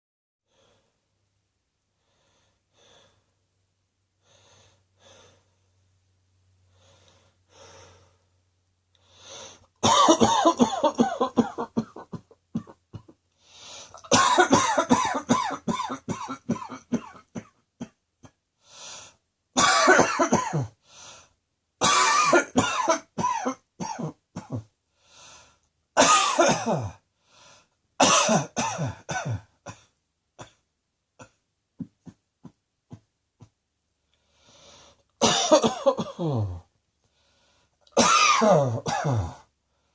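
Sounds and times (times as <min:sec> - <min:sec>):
faint breaths: 0:01.9 - 0:03.4, 0:04.2 - 0:06.0, 0:06.6 - 0:09.8, 0:13.3 - 0:14.1, 0:18.6 - 0:19.2, 0:20.8 - 0:21.4, 0:24.9 - 0:25.7, 0:27.1 - 0:27.8, 0:33.4 - 0:35.1, 0:36.6 - 0:37.9, 0:39.4 - 0:39.9
person coughing: 0:09.8 - 0:13.2, 0:14.0 - 0:18.4, 0:19.6 - 0:20.8, 0:21.8 - 0:24.7, 0:26.0 - 0:27.0, 0:28.0 - 0:30.6, 0:35.2 - 0:36.7, 0:38.0 - 0:39.5.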